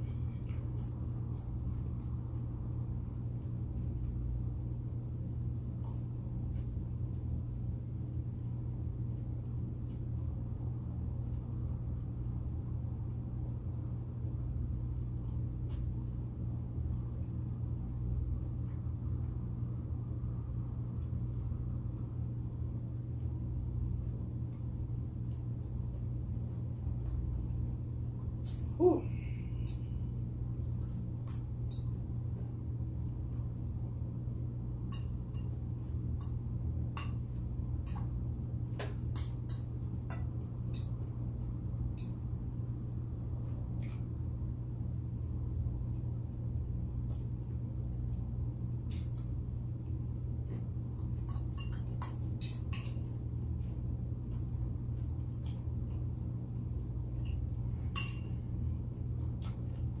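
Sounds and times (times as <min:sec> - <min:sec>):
steady low hum: 0:00.0 - 1:00.0
cutlery clicking against a plate: 0:34.9 - 0:35.6, 0:38.8 - 0:41.0, 0:51.3 - 0:53.1, 0:57.2 - 0:58.4.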